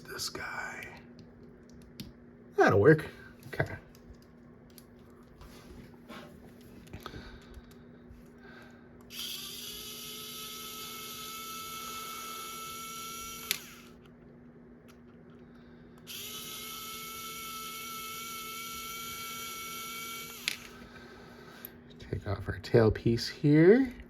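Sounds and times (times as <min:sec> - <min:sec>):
electric screwdriver whining: 0:09.1 - 0:14.0, 0:16.1 - 0:20.8.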